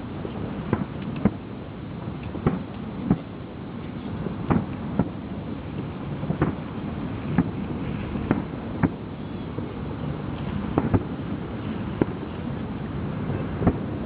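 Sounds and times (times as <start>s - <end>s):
wind on microphone: 0.0s - 14.0s
fireworks bursting with sharp bangs: 0.6s - 1.4s, 2.3s - 3.3s, 4.3s - 5.2s, 6.2s - 6.7s, 7.3s - 7.6s, 8.2s - 9.0s, 10.7s - 11.1s, 11.9s - 12.2s, 13.5s - 14.0s.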